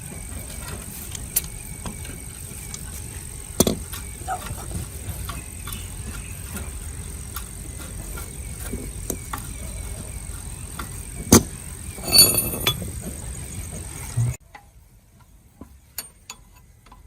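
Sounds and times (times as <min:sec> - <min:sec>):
ringing metallic clatter: 0:12.0 - 0:12.8.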